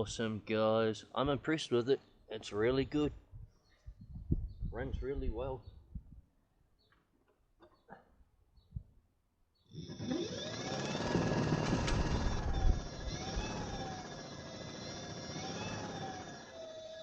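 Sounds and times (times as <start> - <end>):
electric motor whine: 9.8 - 17.0
spinning blade low rumble: 10.0 - 17.0.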